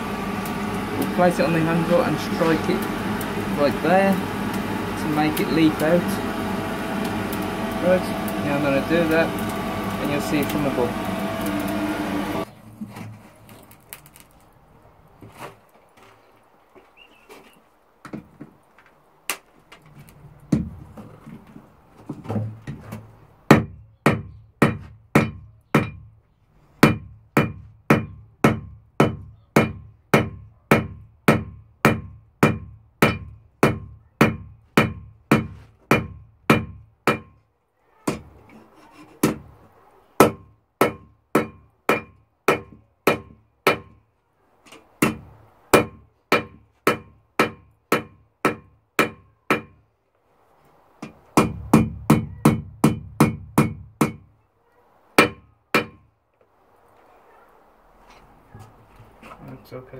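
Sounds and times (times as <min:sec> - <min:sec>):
hammer striking steel on anvil: 0:26.8 - 0:37.4, 0:40.2 - 0:44.0, 0:45.8 - 0:49.8, 0:55.2 - 0:56.0.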